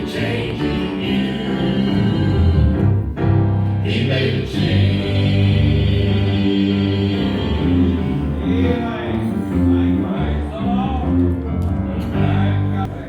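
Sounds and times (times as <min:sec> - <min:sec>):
gospel singing: 0:00.0 - 0:11.3
instrumental accompaniment: 0:00.0 - 0:13.0.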